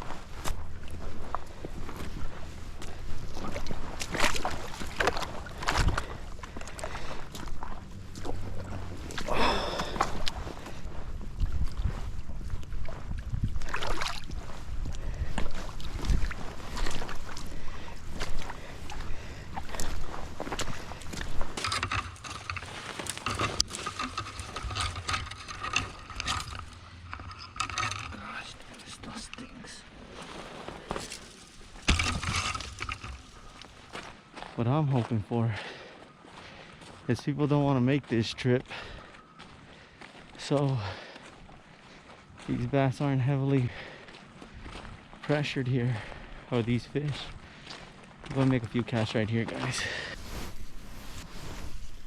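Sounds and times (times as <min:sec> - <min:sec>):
wind rumbling on microphone: 0:00.0 - 0:28.7
water splashing and sloshing: 0:00.0 - 0:34.3
reel gears whirring: 0:21.6 - 0:28.2.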